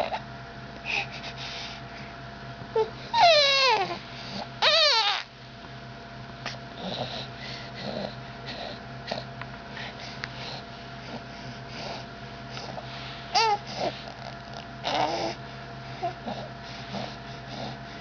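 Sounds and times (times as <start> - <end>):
baby crying: 2.8 - 4.0, 4.6 - 5.3, 13.4 - 13.6.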